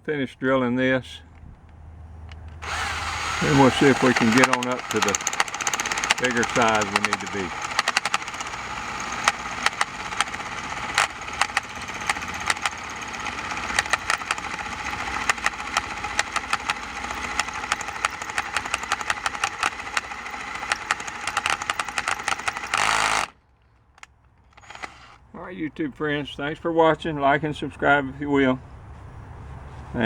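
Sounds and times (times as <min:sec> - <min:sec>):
sharp ticks of drill bit: 0:02.3 - 0:23.4, 0:24.5 - 0:25.2
power drill grinding into steel: 0:02.6 - 0:23.4, 0:24.5 - 0:25.2.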